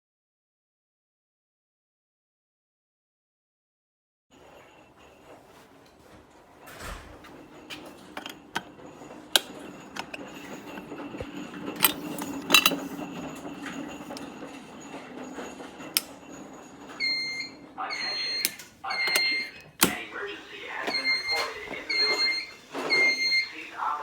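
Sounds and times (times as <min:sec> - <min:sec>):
clicks and knocks: 0:06.6 - 0:17.1
fire alarm pulsing tone: 0:07.0 - 0:24.0.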